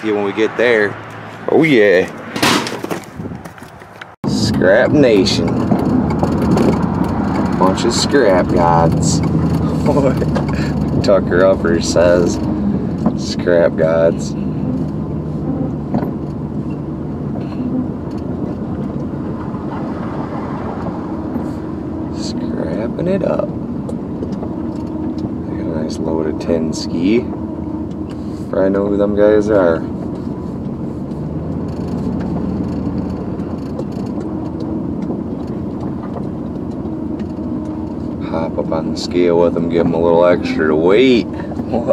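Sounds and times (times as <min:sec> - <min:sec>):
loaded truck driving: 0:00.0 - 0:41.9
faint clicks and knocks: 0:30.6 - 0:38.1.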